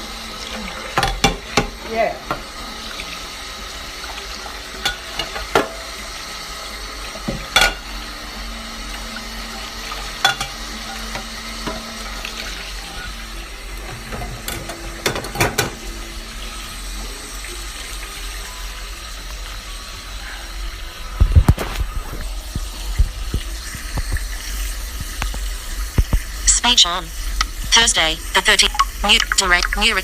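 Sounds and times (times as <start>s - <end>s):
running tap water: 0.0s - 30.0s
dishes knocking and clattering: 0.9s - 2.5s, 4.8s - 5.9s, 7.2s - 7.9s, 10.2s - 12.0s, 13.8s - 15.8s.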